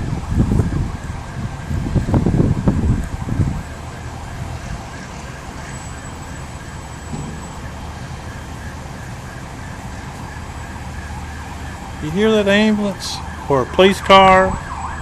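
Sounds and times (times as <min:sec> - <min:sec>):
distant siren wailing: 0:00.0 - 0:15.0
slow traffic rumble: 0:00.0 - 0:15.0
low thump: 0:07.0 - 0:08.0.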